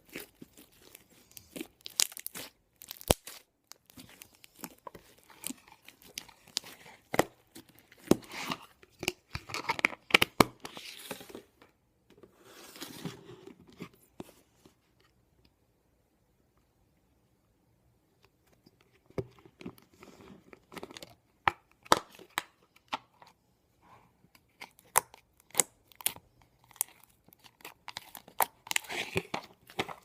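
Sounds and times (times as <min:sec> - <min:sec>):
slime squished by hand: 0:00.0 - 0:08.2.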